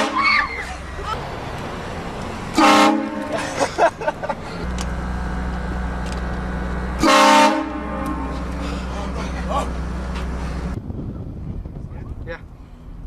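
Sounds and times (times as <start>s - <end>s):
train horn blasts: 0.0s - 0.2s, 2.5s - 3.4s, 7.0s - 8.6s
car engine humming: 0.0s - 13.0s.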